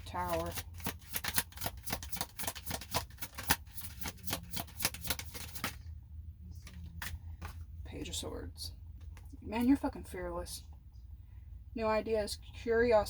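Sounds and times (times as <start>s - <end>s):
cards being shuffled: 0.0s - 5.8s.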